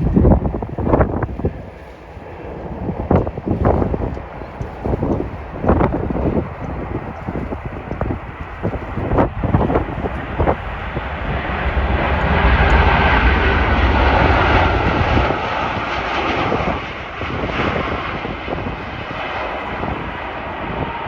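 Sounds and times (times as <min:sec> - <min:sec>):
jet airliner passing: 0:00.0 - 0:21.0
wind buffeting microphone: 0:00.0 - 0:21.0.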